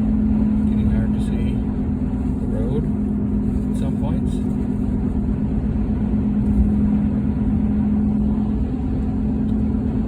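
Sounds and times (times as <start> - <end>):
truck engine and road noise: 0.0 - 10.0.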